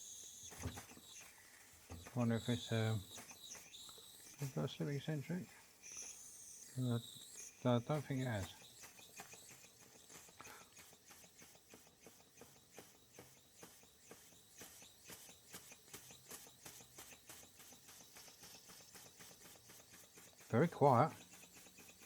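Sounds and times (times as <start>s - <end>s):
model steam engine clicking: 17.0s - 22.0s.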